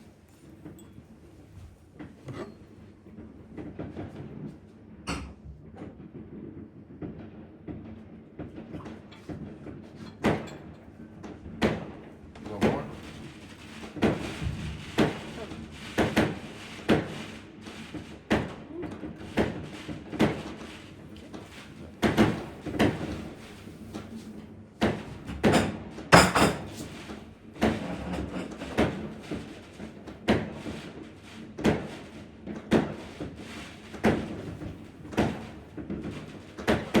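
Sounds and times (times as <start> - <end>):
distant fireworks exploding: 12.6 - 24.1.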